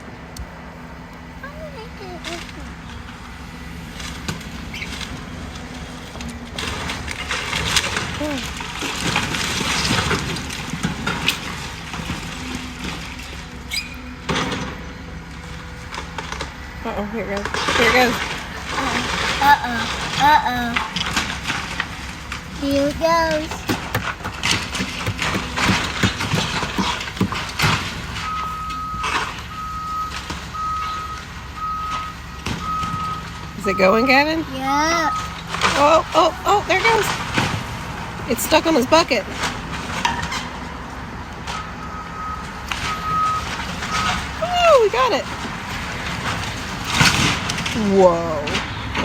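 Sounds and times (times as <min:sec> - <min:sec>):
excavator diesel engine running: 0:00.0 - 0:49.0
loud crunch: 0:03.9 - 0:14.8, 0:17.4 - 0:30.6
cracks and knocks of breaking material: 0:06.3 - 0:14.8, 0:23.6 - 0:28.4, 0:45.4 - 0:47.8
backup alarm beeping: 0:28.1 - 0:37.1, 0:41.5 - 0:45.3.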